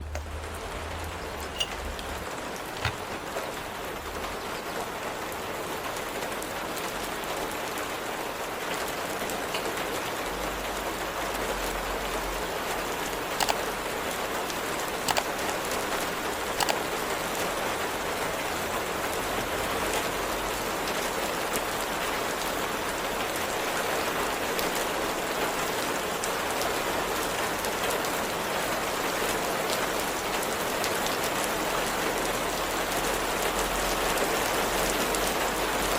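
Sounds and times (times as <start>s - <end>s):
sharp clicks: 0.0s - 4.0s, 13.4s - 13.7s, 15.1s - 15.4s, 16.6s - 16.8s
steady rain: 2.0s - 35.9s.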